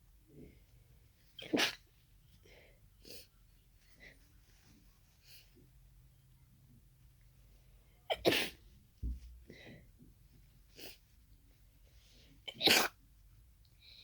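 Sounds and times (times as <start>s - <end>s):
person sneezing: 1.4s - 1.8s, 8.1s - 8.6s
breaths: 2.4s - 3.3s, 9.5s - 9.9s
low thump: 9.0s - 9.3s.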